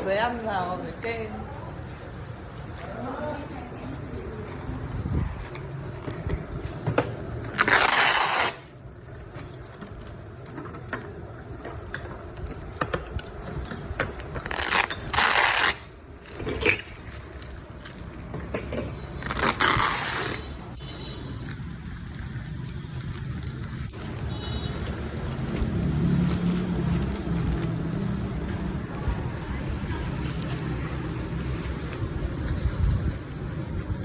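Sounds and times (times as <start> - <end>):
packaging tearing and crumpling: 7.4 - 8.8, 21.4 - 32.7.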